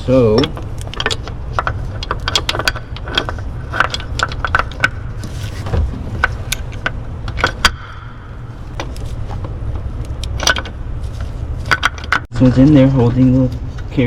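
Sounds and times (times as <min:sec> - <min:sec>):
metal parts clinking and tapping: 0:00.3 - 0:05.0, 0:08.7 - 0:12.3.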